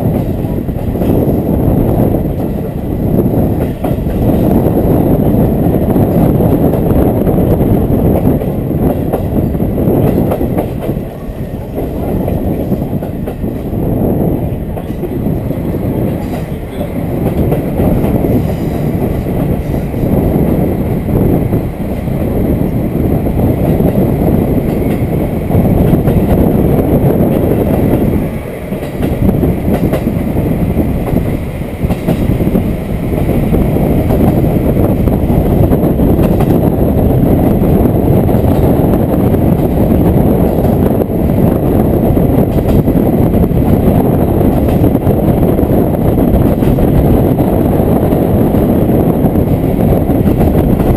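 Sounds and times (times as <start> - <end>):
railcar wheels and engine rumble: 0.0 - 50.9.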